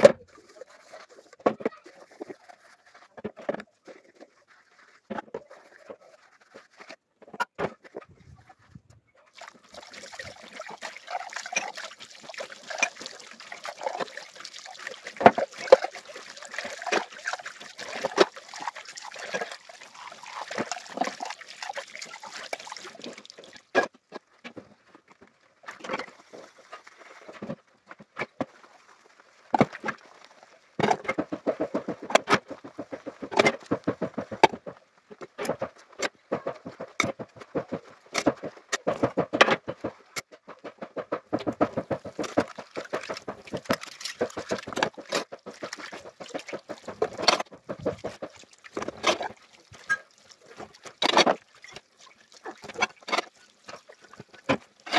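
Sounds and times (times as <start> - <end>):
knocks and clatters of washing: 0.0 - 54.9
water running from a tap: 9.3 - 23.7.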